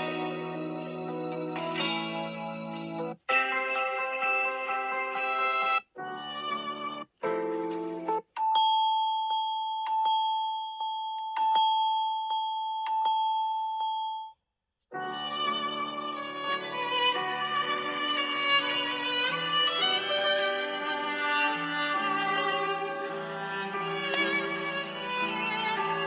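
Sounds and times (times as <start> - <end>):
ringtone melody: 0.0 - 7.7, 15.0 - 26.0
chime-like ringtone: 8.4 - 14.3.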